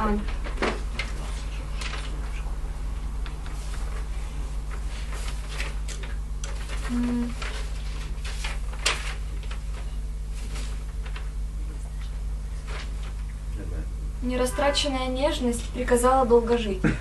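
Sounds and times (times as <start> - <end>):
rustling handling noises: 0.0 - 2.4, 3.2 - 13.4
steady low hum: 0.0 - 17.0.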